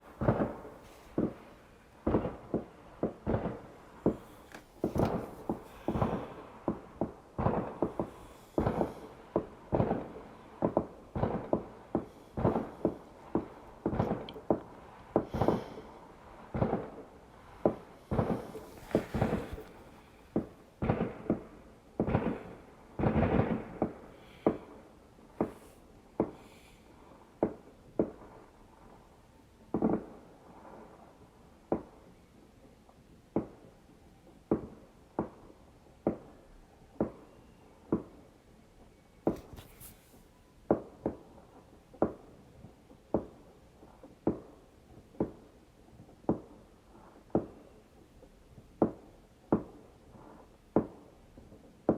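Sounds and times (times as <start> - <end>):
fireworks bangs: 0.0 - 26.8
fireworks crackle: 0.0 - 31.2, 39.2 - 45.5.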